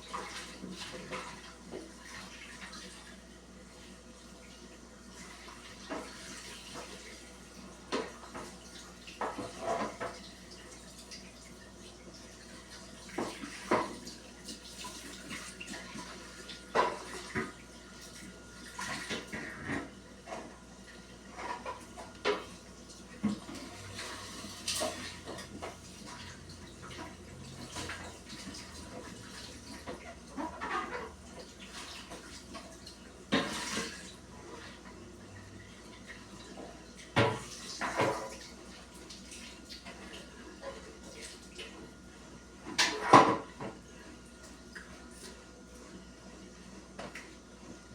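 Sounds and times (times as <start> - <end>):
water running from a tap: 4.2 - 19.6, 22.0 - 40.4.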